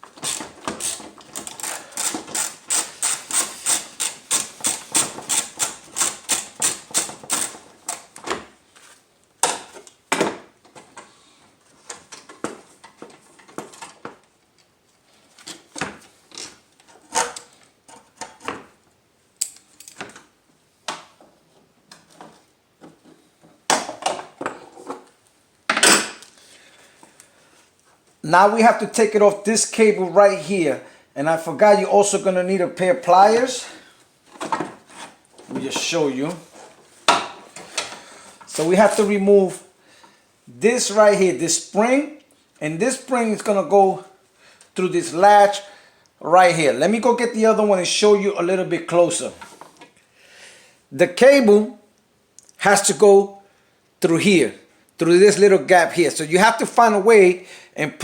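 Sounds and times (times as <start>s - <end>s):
ratchet wrench clicking: 0.2s - 7.6s.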